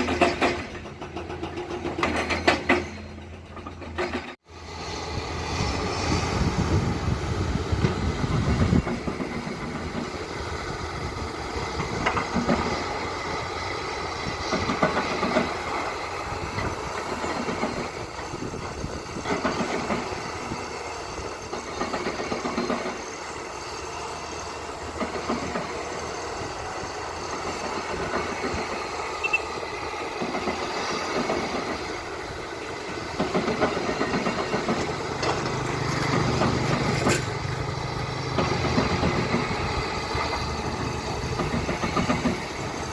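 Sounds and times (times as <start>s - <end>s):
metallic clanking and rattling: 0.0s - 4.4s
excavator diesel engine: 0.0s - 42.9s.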